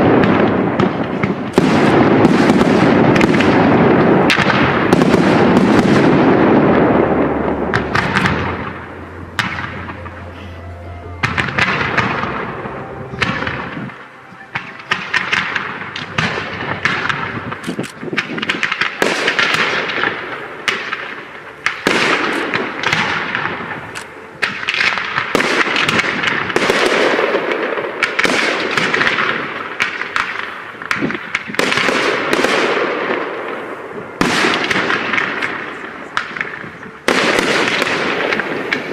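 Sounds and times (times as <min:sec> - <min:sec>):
fireworks bangs and crackle: 0:00.0 - 0:10.4, 0:11.1 - 0:38.9
deep rumble: 0:00.0 - 0:26.5.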